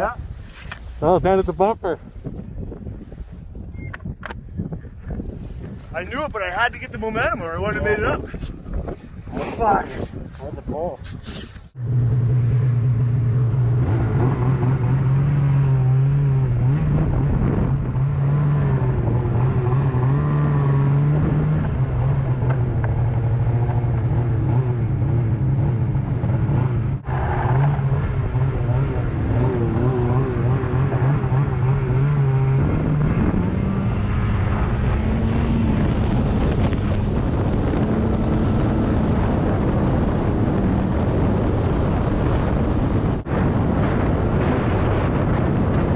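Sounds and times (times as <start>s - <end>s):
snowmobile engine running: 0.0s - 3.3s, 5.0s - 11.7s, 27.4s - 45.9s.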